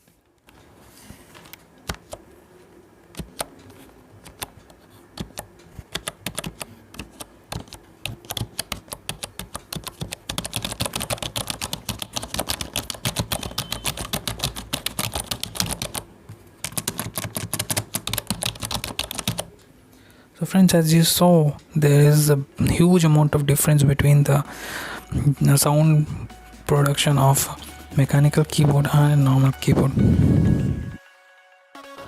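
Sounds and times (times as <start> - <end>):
keyboard typing: 1.4 - 2.3, 3.1 - 19.7.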